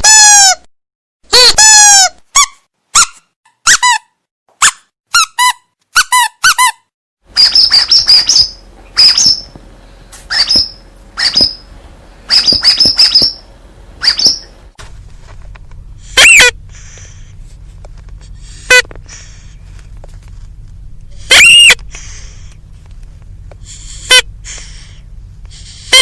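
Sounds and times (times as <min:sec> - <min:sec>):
rubber squeaky toy squeaking: 0:00.0 - 0:00.7, 0:01.3 - 0:09.5, 0:10.3 - 0:11.6, 0:12.3 - 0:13.4, 0:14.0 - 0:14.5, 0:16.2 - 0:16.6, 0:21.2 - 0:21.8.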